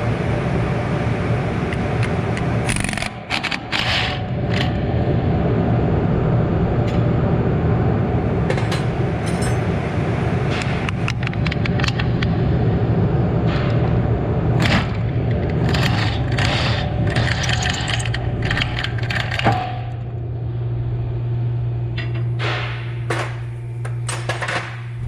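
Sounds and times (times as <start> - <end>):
low workshop hum: 0.0 - 25.0
hand tools and metal parts clinking: 8.6 - 9.7, 15.4 - 19.8.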